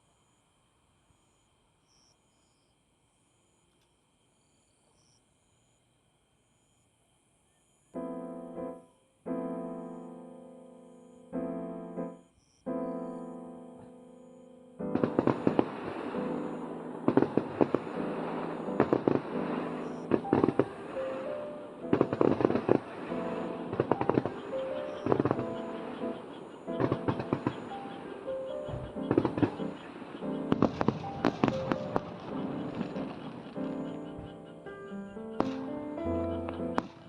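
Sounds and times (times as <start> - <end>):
soft piano chords: 8.0 - 37.0
fireworks crackling and popping: 14.8 - 34.8, 35.4 - 37.0.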